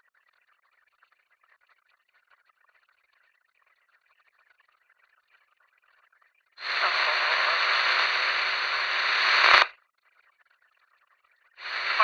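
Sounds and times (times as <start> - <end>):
police radio static burst: 6.6 - 9.7, 11.6 - 12.0.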